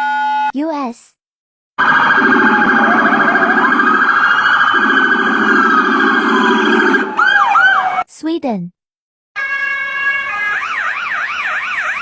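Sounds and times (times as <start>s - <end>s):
lower pulsing siren tone: 1.8s - 8.0s, 9.4s - 12.0s
police siren wailing: 1.8s - 8.0s, 9.4s - 12.0s
siren fast yelp: 1.8s - 8.1s, 9.4s - 12.0s.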